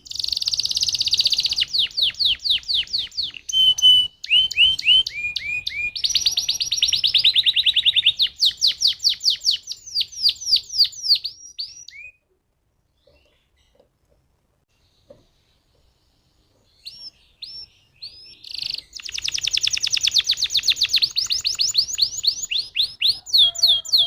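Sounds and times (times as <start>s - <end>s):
canary singing: 0.0s - 12.3s, 13.0s - 24.0s.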